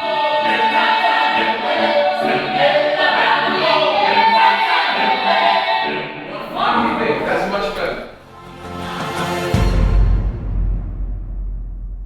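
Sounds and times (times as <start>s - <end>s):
choir singing: 0.0s - 10.4s.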